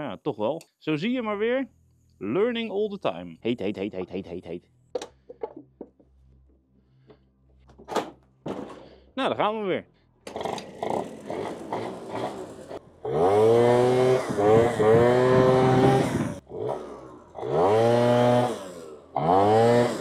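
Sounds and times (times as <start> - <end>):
scooter engine accelerating: 10.3 - 20.0.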